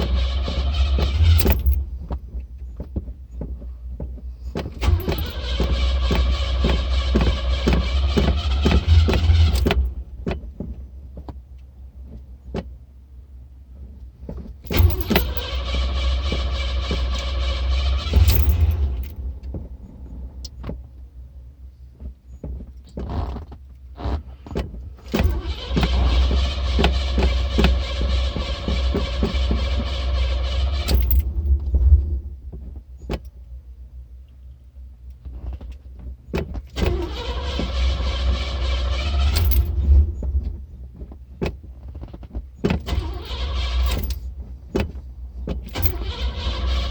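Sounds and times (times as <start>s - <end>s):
starter motor cranking: 0.0s - 1.9s, 4.8s - 10.0s, 14.7s - 19.3s, 25.1s - 31.5s, 36.8s - 40.2s, 42.9s - 44.3s, 45.7s - 46.9s
low rumble: 29.6s - 32.8s.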